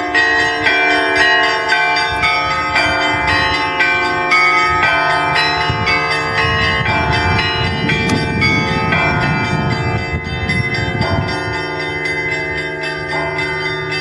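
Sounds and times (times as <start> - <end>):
bells struck in rhythm: 0.0 - 14.0.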